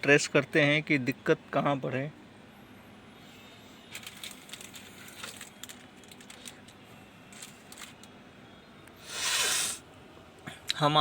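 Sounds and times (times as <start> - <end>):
faint steady background hum: 0.0 - 11.0
light clicks and rattles of handling: 3.9 - 8.2.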